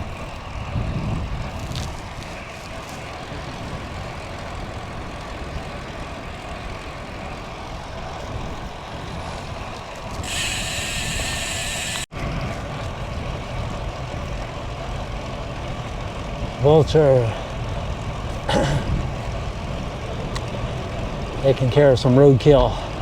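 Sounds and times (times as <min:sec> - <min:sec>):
wind buffeting microphone: 0:00.0 - 0:23.0
bright hiss: 0:10.2 - 0:12.1.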